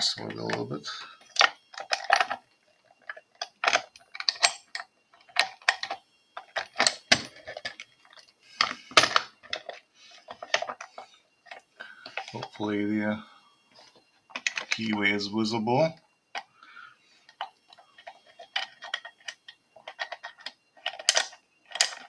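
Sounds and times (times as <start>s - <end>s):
padlock clicking and clacking: 3.1s - 7.8s, 18.0s - 22.0s.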